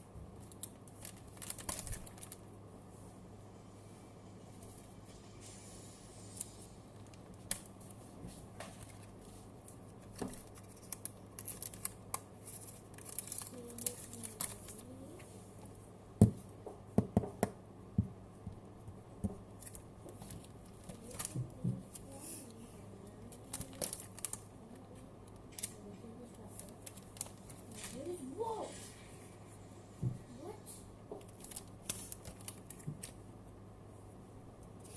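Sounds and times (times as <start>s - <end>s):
cards crinkling and clicking: 0.4s - 2.4s, 6.4s - 8.0s, 9.9s - 14.9s, 23.2s - 28.0s, 31.2s - 33.2s
card packs tearing: 0.6s - 2.4s, 10.3s - 14.8s, 23.3s - 24.4s.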